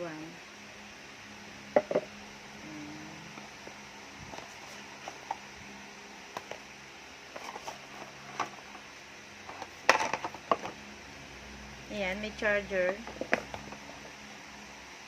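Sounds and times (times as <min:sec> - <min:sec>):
packaging being handled and opened: 0:04.3 - 0:05.5, 0:06.3 - 0:10.8.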